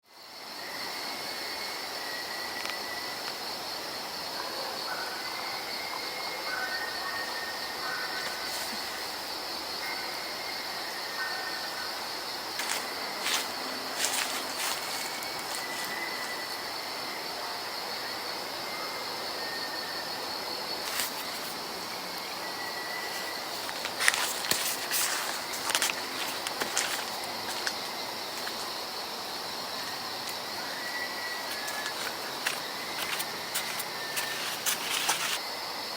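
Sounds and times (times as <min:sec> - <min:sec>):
insect chorus: 0:00.0 - 0:35.9.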